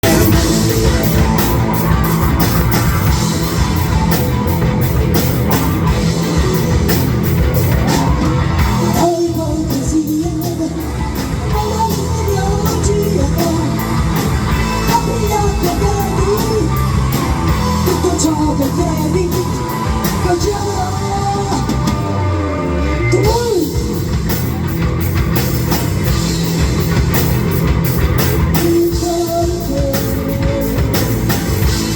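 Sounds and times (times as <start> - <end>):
heavy rock band playing: 0.0 - 31.9
person singing: 7.8 - 24.2, 28.5 - 31.7.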